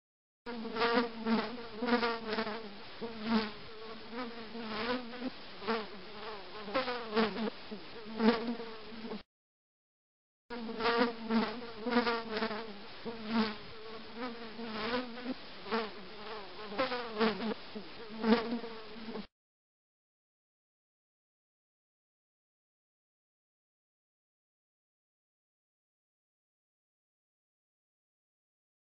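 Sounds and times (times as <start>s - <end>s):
housefly buzzing: 0.5s - 9.3s, 10.5s - 19.3s.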